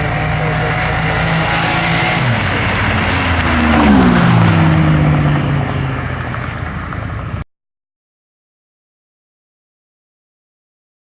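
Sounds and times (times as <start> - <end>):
car engines at full throttle: 0.0 - 7.4.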